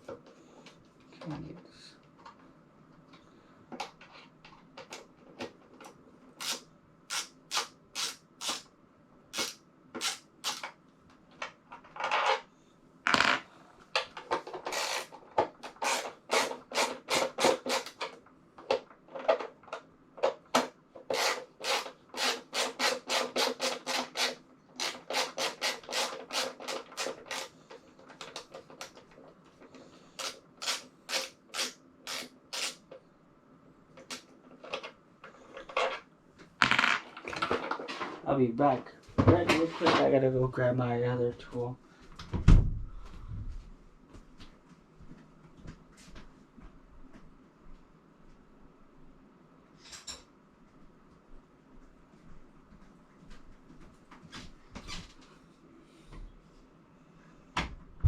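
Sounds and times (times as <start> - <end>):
hand tool rasping: 21.1 - 27.5.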